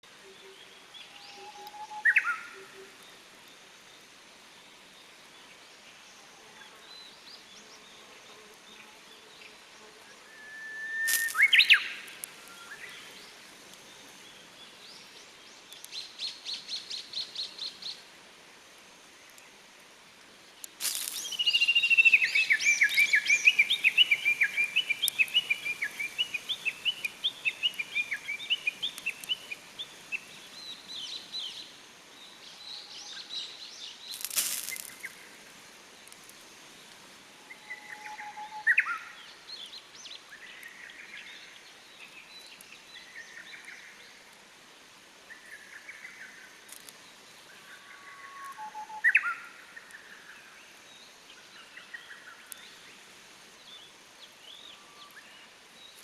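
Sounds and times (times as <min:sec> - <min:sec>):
songbirds singing: 0:00.0 - 0:19.6, 0:20.4 - 0:44.4, 0:45.2 - 0:56.0
sharp crack: 0:34.2 - 0:35.2.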